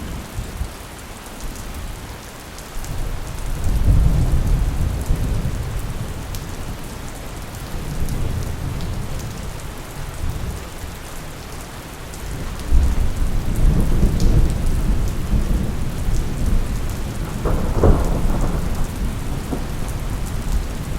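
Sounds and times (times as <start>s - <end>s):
steady rain: 0.0s - 20.9s
rolling thunder: 3.0s - 10.6s, 12.2s - 20.9s
sharp thunderclap: 12.7s - 20.9s.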